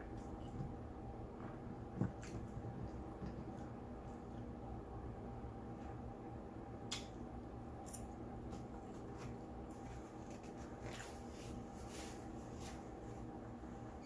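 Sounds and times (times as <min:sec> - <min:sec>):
low steady hum: 0:00.0 - 0:14.0
chewing and handling food: 0:00.1 - 0:04.5.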